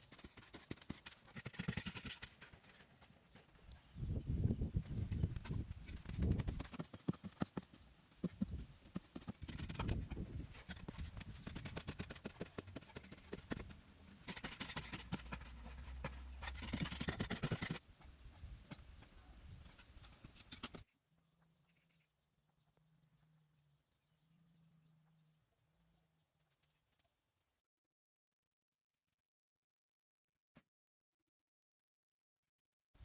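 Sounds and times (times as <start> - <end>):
knocks taps and scrapes: 0.0 - 3.9, 4.8 - 20.9.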